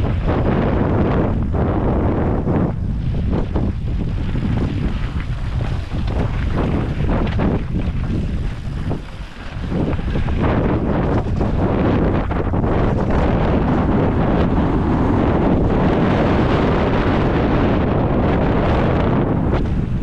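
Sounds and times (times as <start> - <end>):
bike tyre rumble: 0.0 - 20.0
wind rushing over microphone: 0.0 - 20.0
bike knocks and rattles: 3.1 - 14.2.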